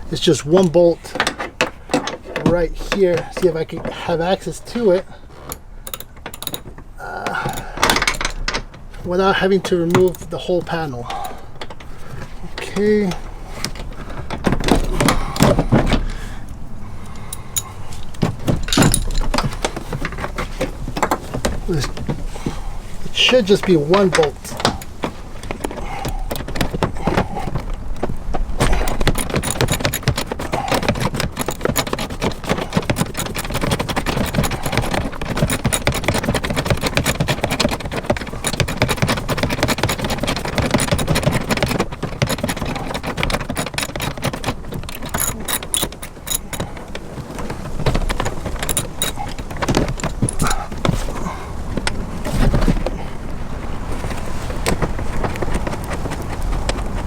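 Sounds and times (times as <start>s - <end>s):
metallic clinking: 0.0s - 22.2s, 22.8s - 52.0s
handling noise: 0.0s - 57.0s
socket ratchet clicking: 5.4s - 6.8s, 28.6s - 46.7s.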